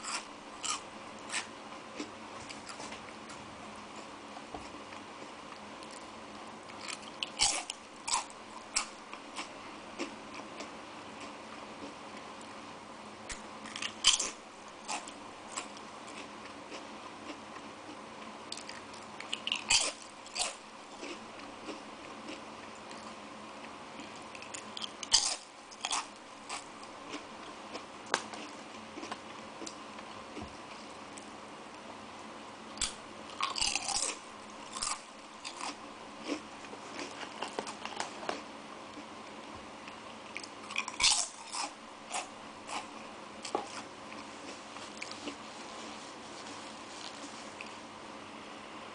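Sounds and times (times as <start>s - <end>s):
corn snacks crunching: 6.7s - 10.1s, 18.5s - 23.1s, 24.0s - 29.8s, 32.8s - 38.4s, 40.4s - 42.9s.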